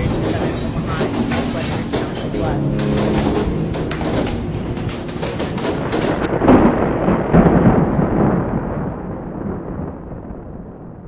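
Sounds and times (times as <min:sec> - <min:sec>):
rolling rumble of thunder: 0:02.3 - 0:11.0.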